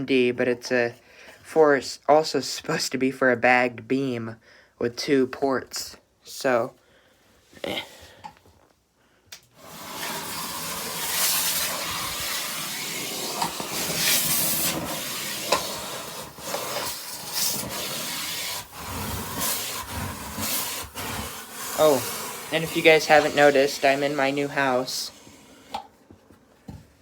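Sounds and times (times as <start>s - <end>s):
vacuum suction hissing: 9.6s - 25.9s.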